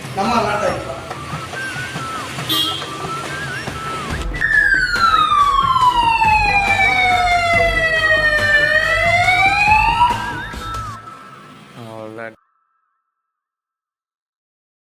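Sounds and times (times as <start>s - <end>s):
burglar alarm siren tone: 0.8s - 11.6s.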